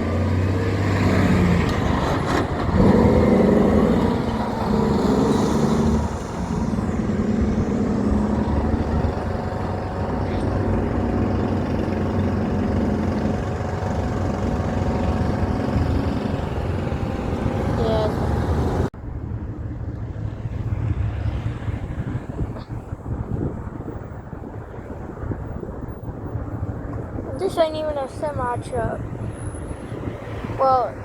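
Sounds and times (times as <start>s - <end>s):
truck engine driving past: 0.0s - 18.9s.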